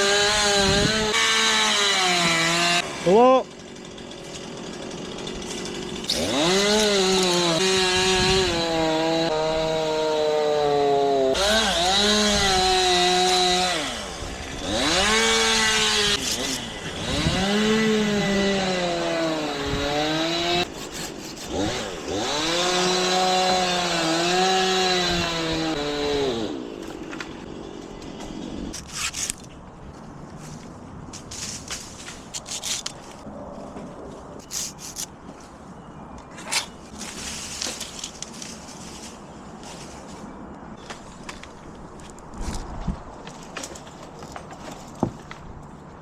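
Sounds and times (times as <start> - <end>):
chainsaw cutting wood: 0.0 - 29.4.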